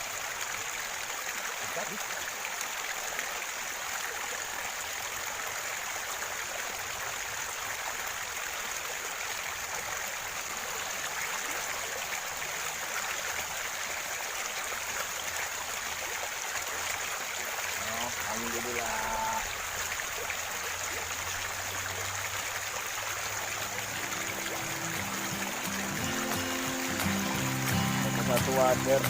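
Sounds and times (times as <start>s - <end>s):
river rushing and gurgling: 0.0s - 29.0s.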